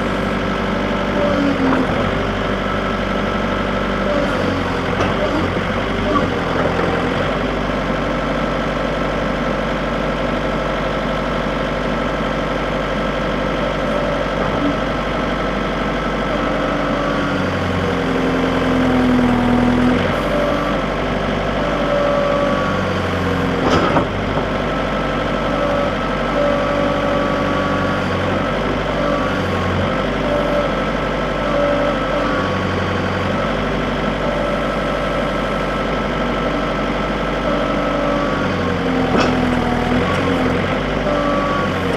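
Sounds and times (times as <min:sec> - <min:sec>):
backhoe engine running: 0:00.0 - 0:41.9
whining machine tones: 0:16.2 - 0:41.9.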